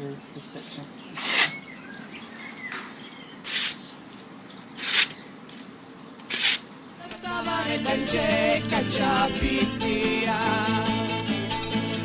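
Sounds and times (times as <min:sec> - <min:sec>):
hissing sprays: 0:01.0 - 0:01.8, 0:03.4 - 0:03.9, 0:04.8 - 0:06.7
music: 0:07.2 - 0:12.0.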